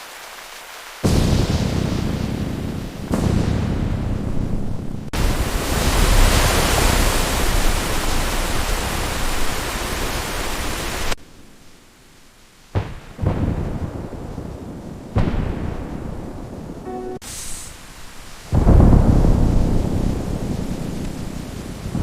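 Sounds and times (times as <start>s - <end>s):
heavy rain: 0.0s - 22.0s
wind: 0.0s - 22.0s
thunder cracks: 1.0s - 8.7s, 12.8s - 17.2s, 18.4s - 22.0s.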